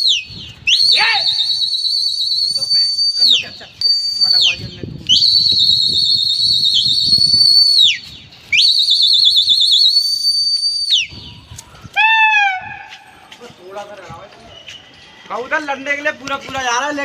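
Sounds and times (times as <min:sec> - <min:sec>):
shrill human whistles with trill: 0:00.0 - 0:12.2.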